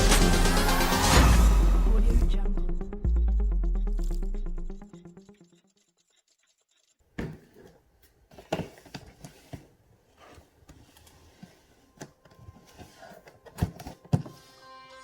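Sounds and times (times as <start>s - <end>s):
packaging knocks and rustles: 7.2s - 14.4s.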